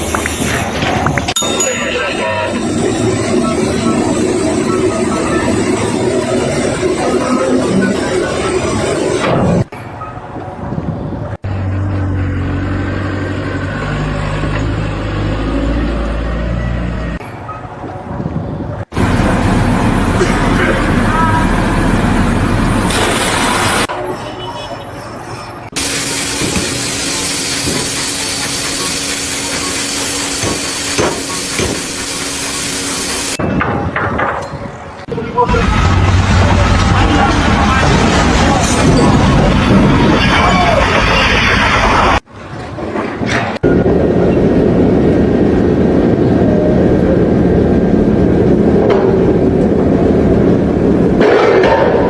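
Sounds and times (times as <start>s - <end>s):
loud steady hiss: 25.8s - 33.4s
loud mechanical rumble: 35.4s - 52.0s.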